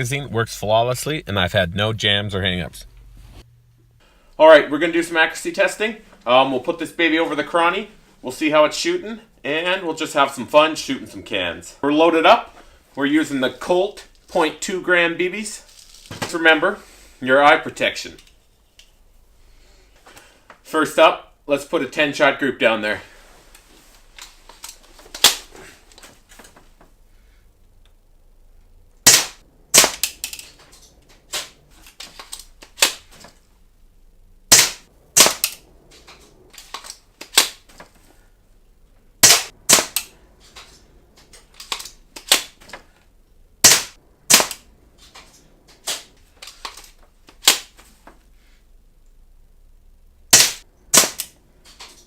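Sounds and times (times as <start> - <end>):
airsoft shotgun firing snap: 29.0 - 30.2, 34.5 - 35.6, 39.2 - 40.1, 43.6 - 44.6, 50.3 - 51.3.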